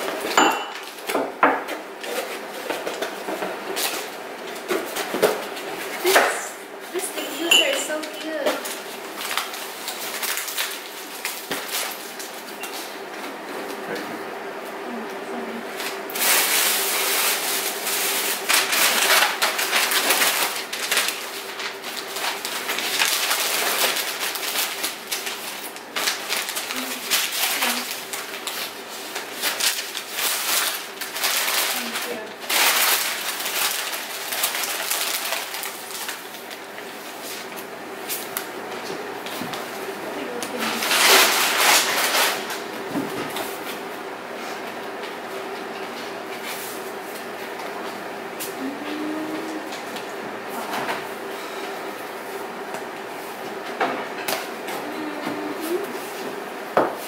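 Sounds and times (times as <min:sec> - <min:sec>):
wrapping paper crinkling: 0:07.0 - 0:12.9, 0:15.8 - 0:39.8, 0:40.4 - 0:42.8
packaging rustling: 0:07.9 - 0:12.6, 0:16.2 - 0:37.0, 0:40.6 - 0:42.7.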